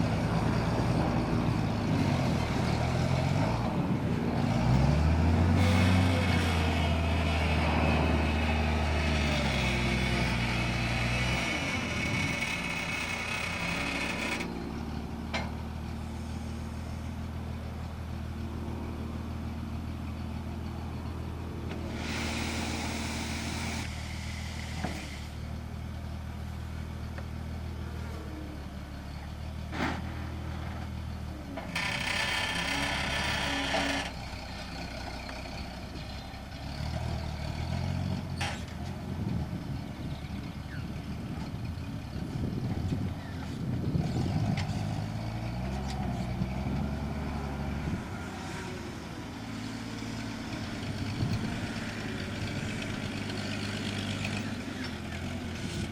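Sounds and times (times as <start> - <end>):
engine running: 0.0 - 55.9.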